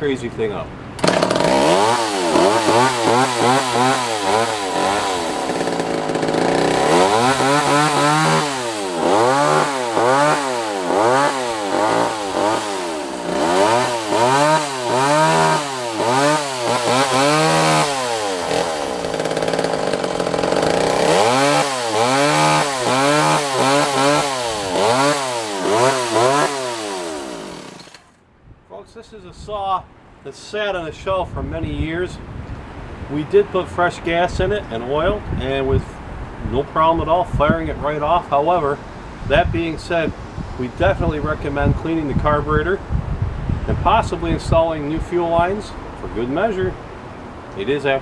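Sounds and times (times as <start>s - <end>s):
chainsaw revving: 1.0s - 28.2s.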